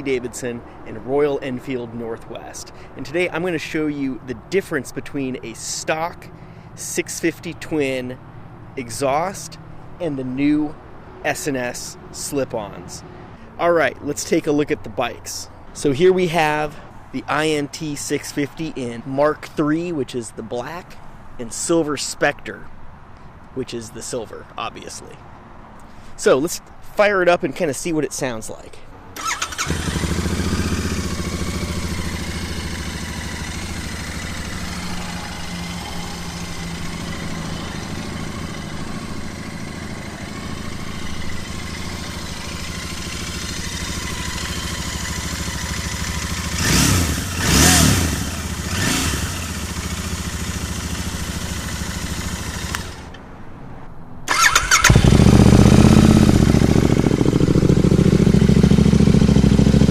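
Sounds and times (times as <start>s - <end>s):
motorcycle engine idling: 29.2s - 53.2s, 54.3s - 59.9s
motorcycle engine revving: 29.2s - 53.2s, 54.3s - 59.9s
second motorcycle idling louder: 29.2s - 53.2s, 54.3s - 59.9s.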